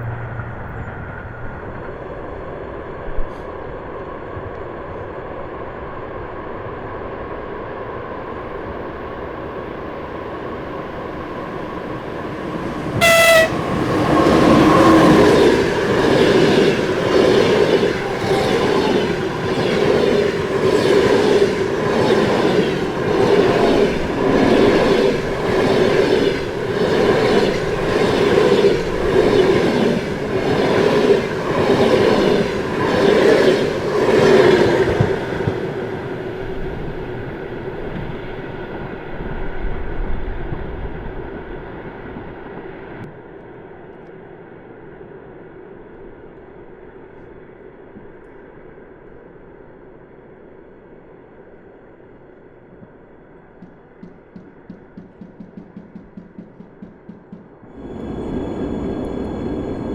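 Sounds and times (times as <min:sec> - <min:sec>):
train approaching with rumble: 0:00.0 - 0:43.0, 0:53.6 - 0:59.9
train horn blast: 0:13.0 - 0:14.6.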